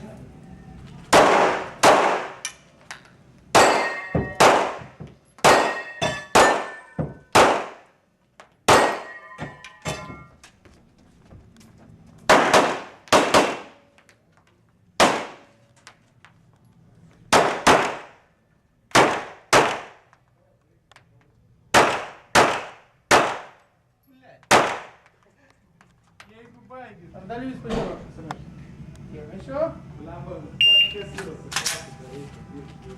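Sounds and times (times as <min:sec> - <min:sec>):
handgun shots: 0:01.1 - 0:02.5, 0:03.6 - 0:07.9, 0:08.7 - 0:09.2, 0:12.3 - 0:13.8, 0:15.0 - 0:15.4, 0:17.3 - 0:18.1, 0:18.9 - 0:20.0, 0:21.7 - 0:23.6, 0:24.5 - 0:25.0.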